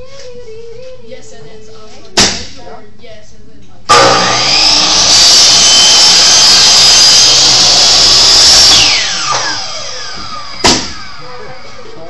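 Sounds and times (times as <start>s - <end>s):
power tool motor whining: 3.9s - 12.0s.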